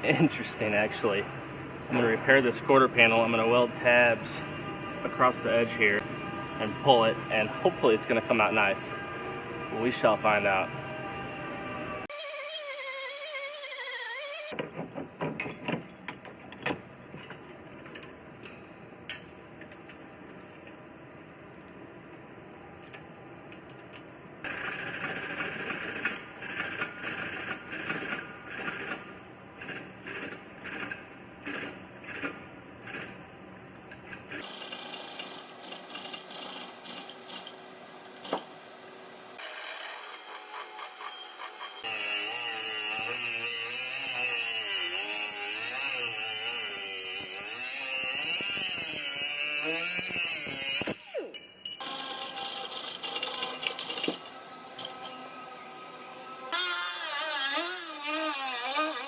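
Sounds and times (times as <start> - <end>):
wavering whine: 2.1 - 14.5, 45.6 - 58.9
tool rasping on car body: 56.5 - 59.0.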